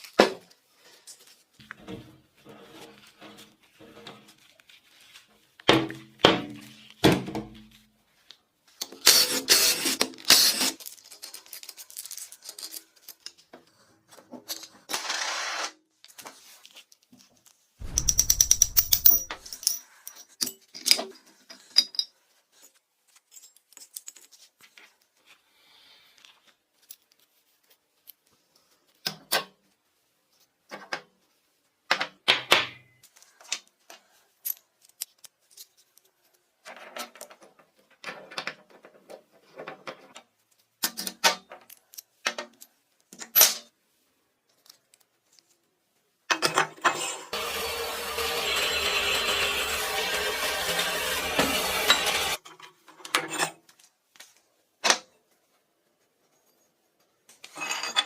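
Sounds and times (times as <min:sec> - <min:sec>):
small metal parts clinking: 0:10.8 - 0:13.4, 0:17.8 - 0:22.2, 0:34.4 - 0:36.1
dense rattling burst: 0:17.8 - 0:19.5.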